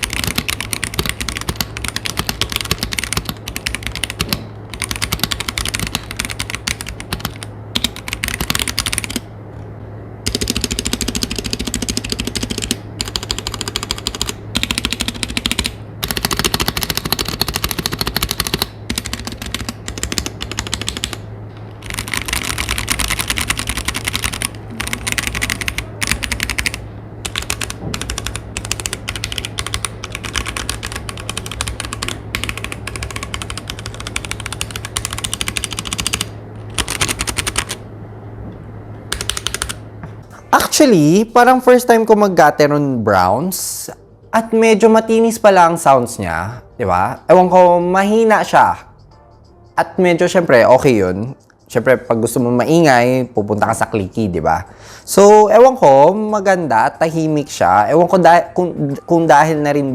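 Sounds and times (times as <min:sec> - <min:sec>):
mechanical keyboard typing: 0:00.0 - 0:09.3, 0:10.2 - 0:21.2, 0:21.8 - 0:37.8, 0:39.1 - 0:39.8
steady low hum: 0:00.0 - 0:59.9.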